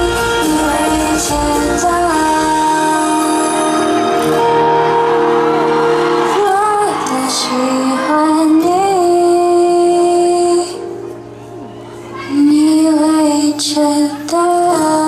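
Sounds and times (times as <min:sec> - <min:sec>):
person singing long notes: 0:00.0 - 0:11.0
backing track with deep bass: 0:00.0 - 0:15.0.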